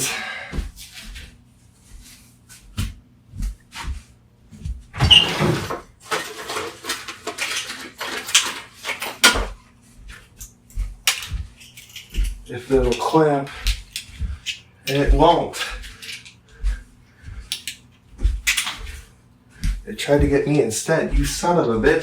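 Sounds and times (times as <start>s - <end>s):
scraping clatter: 5.0s - 9.6s
clicks and knocks of handling tools: 6.1s - 9.5s, 12.9s - 16.4s, 17.5s - 19.0s.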